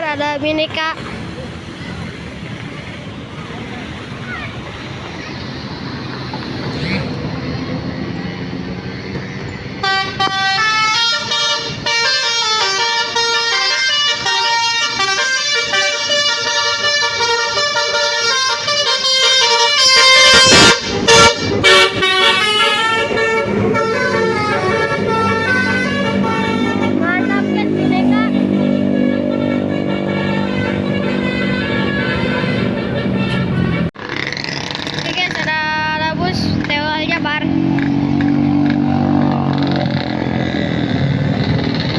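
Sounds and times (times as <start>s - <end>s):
traffic noise: 0.0s - 41.9s
multi-tone musical air horn: 9.8s - 33.9s.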